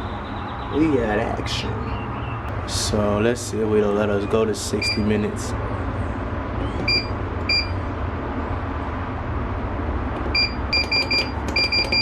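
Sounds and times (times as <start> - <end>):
short high beeps: 6.8 - 7.8, 10.4 - 12.0.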